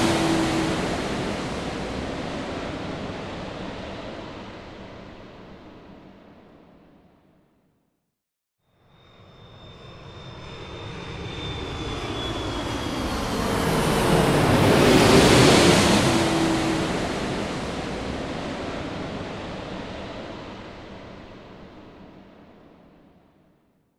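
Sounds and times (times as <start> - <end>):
high engine whine: 0.0 - 4.0, 9.8 - 19.7
airplane flying over: 0.0 - 6.0, 9.0 - 21.8.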